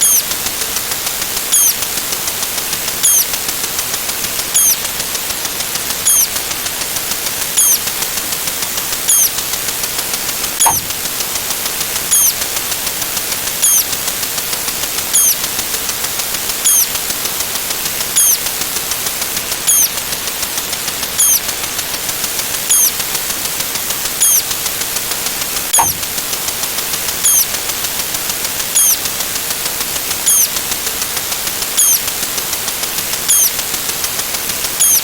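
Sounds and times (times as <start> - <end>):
short high synthetic chirp: 0.0 - 0.3, 1.5 - 1.8, 3.0 - 3.3, 4.6 - 4.8, 6.1 - 6.4, 7.6 - 7.8, 9.1 - 9.4, 10.6 - 10.9, 12.1 - 12.4, 13.6 - 14.0, 15.2 - 15.4, 16.7 - 16.9, 18.2 - 18.4, 19.7 - 20.0, 21.2 - 21.4, 22.7 - 23.0, 24.2 - 24.5, 25.8 - 26.1, 27.2 - 27.5, 28.8 - 29.0, 30.3 - 30.5, 31.8 - 32.0, 33.3 - 33.6, 34.8 - 35.0
steady hiss with fine ticking: 0.0 - 35.0
sliding mid-pitched tone: 10.6 - 11.0, 25.8 - 26.1.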